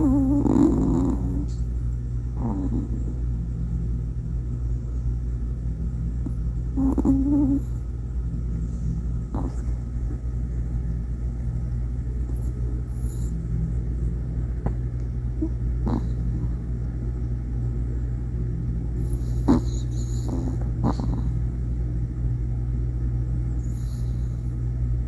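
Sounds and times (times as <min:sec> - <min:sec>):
dog snorting: 0:00.0 - 0:03.4, 0:06.7 - 0:07.9, 0:09.3 - 0:10.8, 0:12.2 - 0:13.5, 0:15.4 - 0:16.8, 0:19.0 - 0:21.6, 0:23.6 - 0:24.6
dog snoring: 0:00.0 - 0:03.5, 0:06.2 - 0:08.0, 0:09.3 - 0:10.3, 0:12.2 - 0:13.6, 0:15.4 - 0:16.8, 0:19.0 - 0:21.8, 0:23.6 - 0:24.7.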